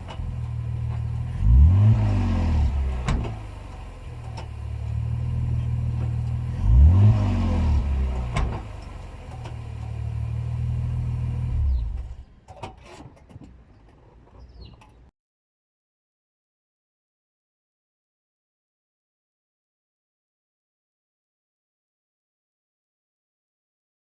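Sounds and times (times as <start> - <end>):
car engine running: 0.0 - 12.3.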